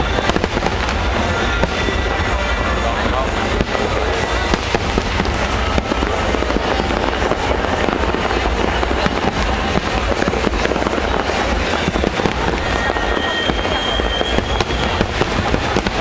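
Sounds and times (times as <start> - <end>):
fireworks crackling: 0.0 - 16.0
low rumble of fireworks bursts: 0.0 - 16.0.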